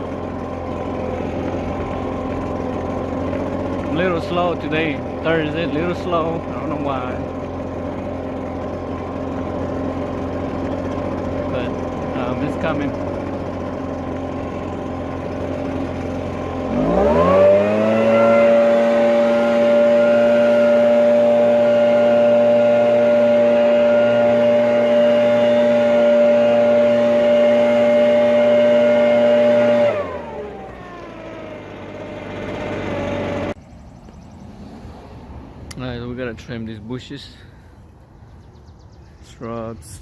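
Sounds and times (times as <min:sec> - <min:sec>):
small engine idling and revving: 0:00.0 - 0:40.0.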